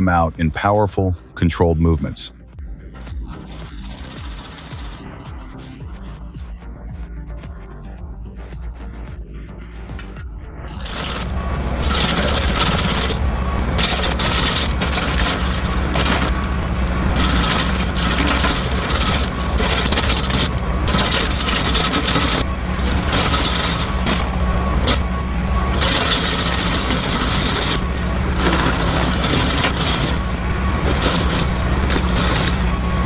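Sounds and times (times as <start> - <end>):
heavy diesel machinery running: 0.0 - 33.0
wood scraping and cracking: 3.3 - 5.0, 10.7 - 33.0.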